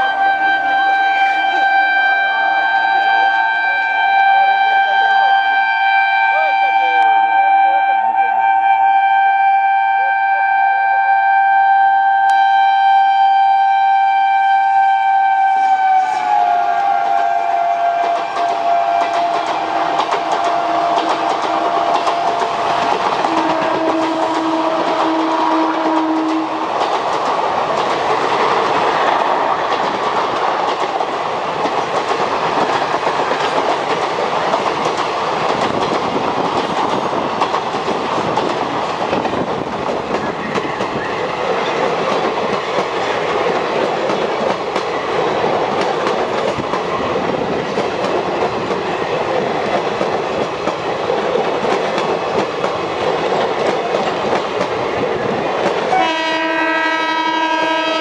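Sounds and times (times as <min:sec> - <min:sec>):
train horn: 0:00.0 - 0:26.8, 0:55.9 - 0:58.0
passenger train rumbling past: 0:00.0 - 0:58.0.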